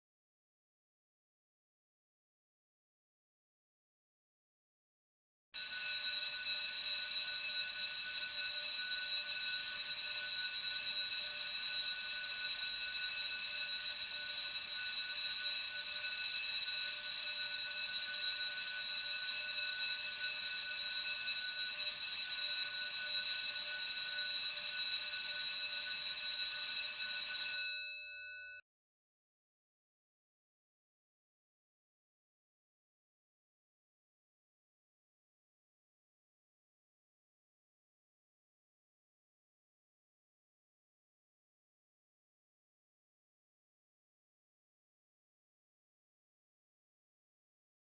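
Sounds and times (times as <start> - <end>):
school bell ringing: 26.5 - 28.3.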